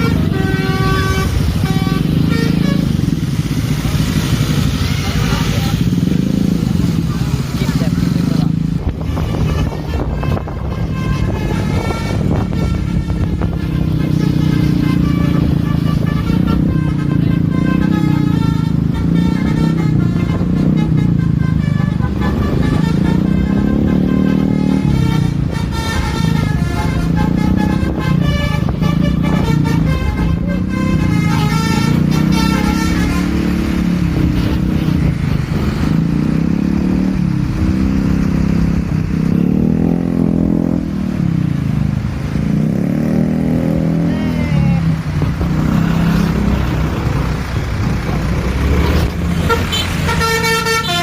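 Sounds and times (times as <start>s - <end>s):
multi-tone bus horn melody: 0.0s - 3.4s, 8.3s - 41.5s, 48.1s - 51.0s
loud bus engine: 0.0s - 51.0s.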